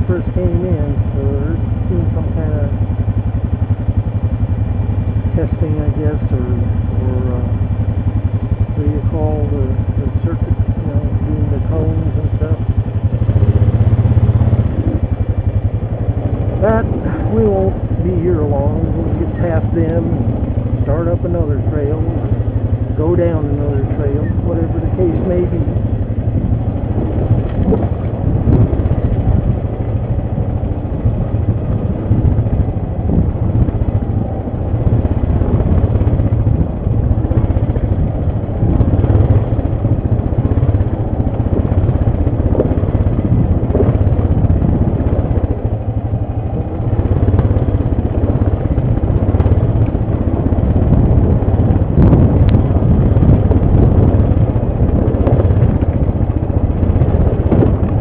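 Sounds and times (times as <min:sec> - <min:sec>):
atv engine running: 0:00.0 - 0:58.0.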